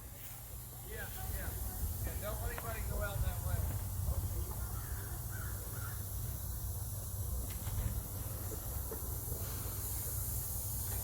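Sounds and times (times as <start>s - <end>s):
bird cawing: 4.7s - 6.2s.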